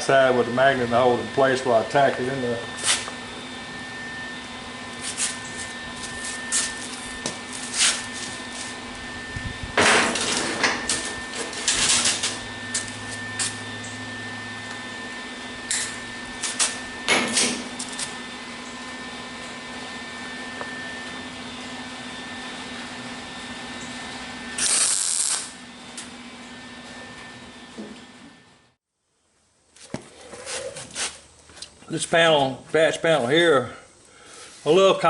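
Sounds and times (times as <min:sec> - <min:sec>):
steady machine hum: 0:00.0 - 0:28.8
welding crackling bursts: 0:24.6 - 0:25.6.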